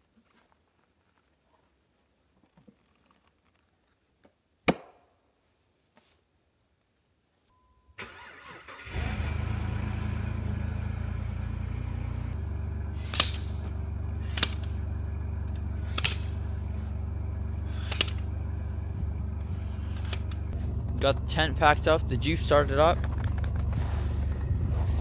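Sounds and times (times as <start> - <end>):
car engine cranking and idling: 8.0 - 25.0.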